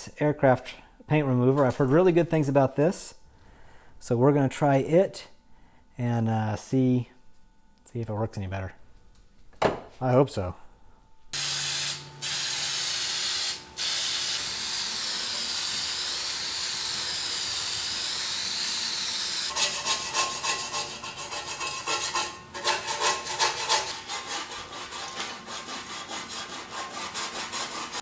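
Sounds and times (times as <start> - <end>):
aerosol can spraying: 11.4 - 19.5
scraping and scrubbing metal: 19.5 - 28.0.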